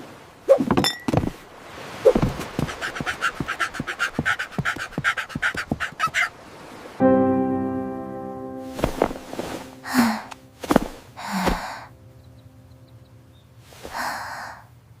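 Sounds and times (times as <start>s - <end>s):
breathy exhalations: 2.4s - 6.1s, 9.4s - 12.0s, 13.7s - 14.7s
piano chord: 7.0s - 10.6s, 11.9s - 13.3s.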